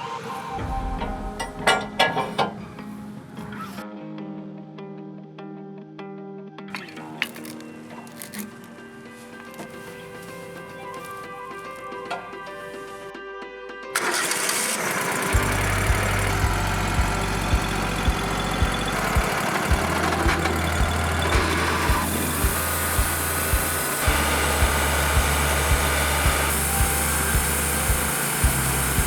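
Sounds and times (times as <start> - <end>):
background music with steady beat: 0.0 - 4.9, 7.0 - 29.0
sawmill engine running: 14.0 - 29.0.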